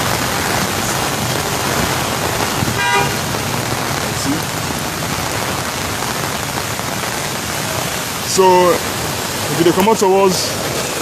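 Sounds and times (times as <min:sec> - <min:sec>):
flowing water on road: 0:00.0 - 0:11.0
rain hissing: 0:00.0 - 0:11.0
vehicle horn toot: 0:02.8 - 0:03.3.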